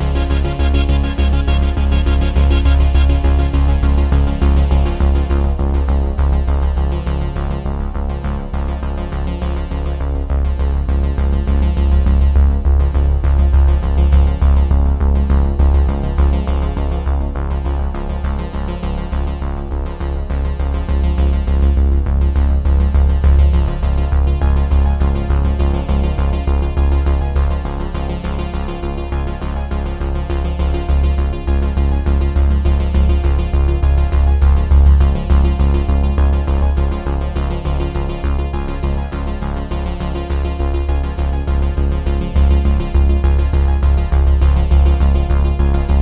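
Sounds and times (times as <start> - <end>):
electronic synthesizer music: 0.0 - 5.6, 42.1 - 46.0.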